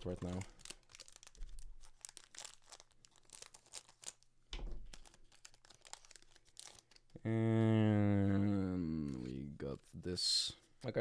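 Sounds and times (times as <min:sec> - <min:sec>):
wrappers and cards crinkling: 0:00.0 - 0:07.2, 0:09.0 - 0:10.0.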